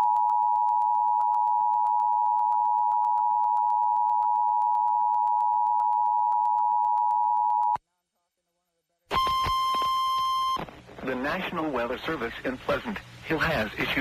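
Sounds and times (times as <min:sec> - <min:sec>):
two-tone alert signal: 0:09.1 - 0:10.6.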